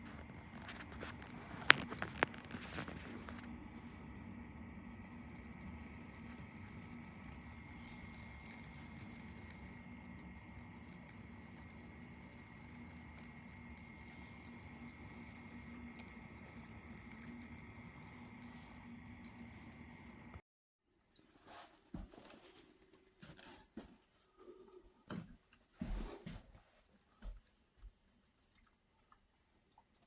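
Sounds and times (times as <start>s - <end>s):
humidifier hum: 0.0s - 20.4s
water ticks and drips: 0.1s - 20.4s, 21.1s - 21.4s, 26.9s - 30.0s.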